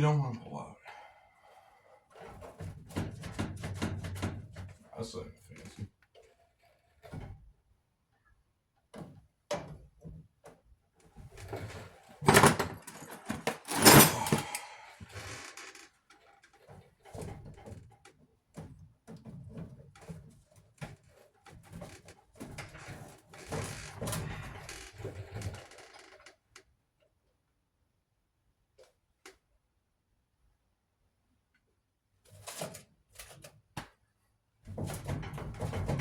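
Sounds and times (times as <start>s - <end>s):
metal parts clattering and scraping: 11.4s - 14.6s.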